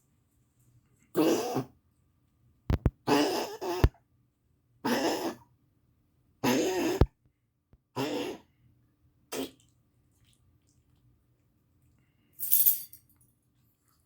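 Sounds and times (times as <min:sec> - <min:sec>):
dog coughing: 0:01.2 - 0:01.7, 0:04.9 - 0:05.4, 0:06.4 - 0:07.1, 0:08.0 - 0:08.5.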